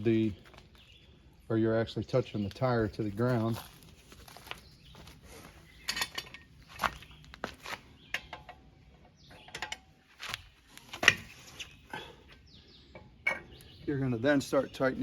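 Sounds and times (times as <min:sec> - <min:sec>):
metallic clicks and clanks of tools: 0:05.8 - 0:06.5.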